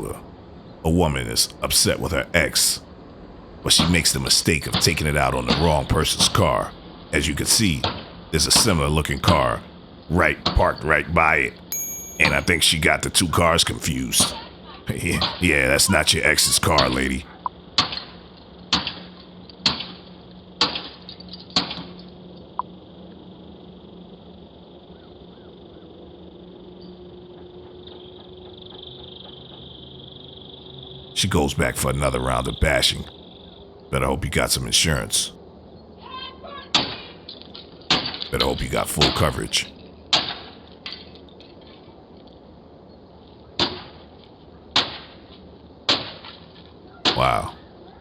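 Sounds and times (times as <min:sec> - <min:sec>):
low steady hum: 0:00.0 - 0:02.9, 0:03.6 - 0:17.4, 0:31.2 - 0:33.1, 0:34.0 - 0:35.3, 0:38.4 - 0:39.7, 0:47.2 - 0:47.6
insects droning: 0:00.0 - 0:36.1, 0:45.4 - 0:45.8.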